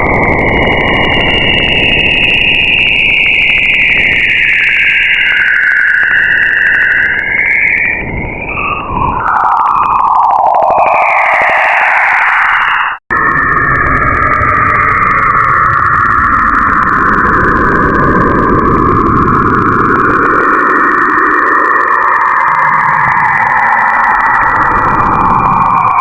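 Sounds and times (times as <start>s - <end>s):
high wavering synthesized tones: 0.0s - 19.2s
rushing noisy rumble: 0.0s - 26.0s.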